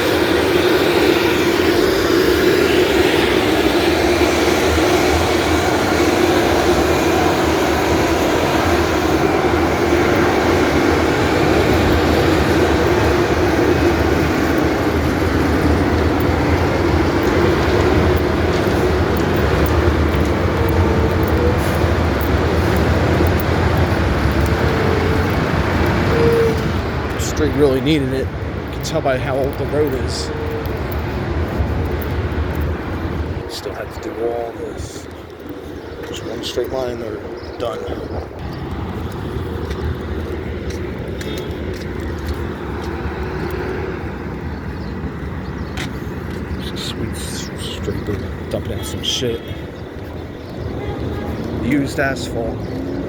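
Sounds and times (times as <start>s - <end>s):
cutting drum grinding road: 0.0s - 53.0s
milling machine engine: 0.0s - 53.0s
scattered clicks: 10.0s - 33.9s.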